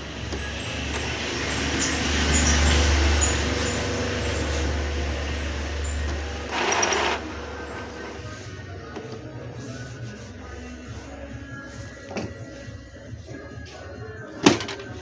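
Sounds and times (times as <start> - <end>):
printer mechanism hum and whirr: 3.2 - 10.7.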